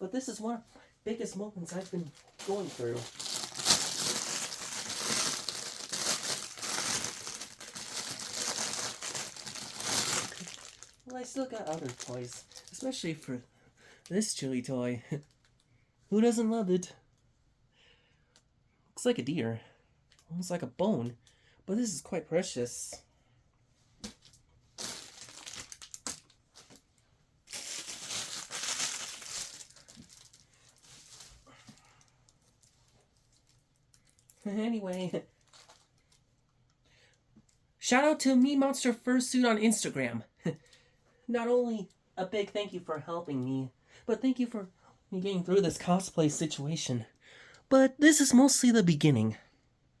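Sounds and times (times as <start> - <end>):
packaging crinkling and rustling: 1.7 - 13.2, 24.2 - 26.9, 27.5 - 31.6, 35.4 - 36.2.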